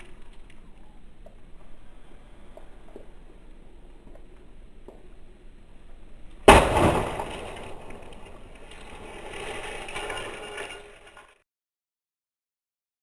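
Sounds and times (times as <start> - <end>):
loud crash of breaking glass: 6.5 - 8.0.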